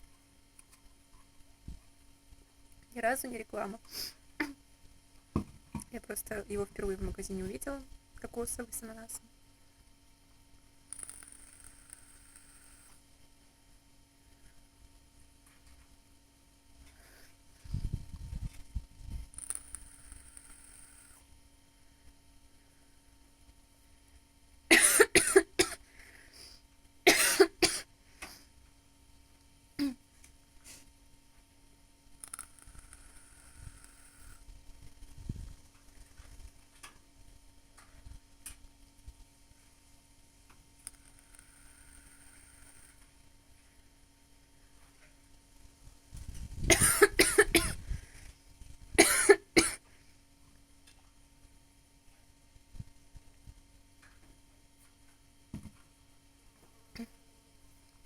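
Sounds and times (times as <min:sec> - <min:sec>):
woman coughing: 0:24.7 - 0:25.8, 0:27.1 - 0:27.9, 0:29.8 - 0:30.0, 0:46.7 - 0:47.8, 0:49.0 - 0:49.8.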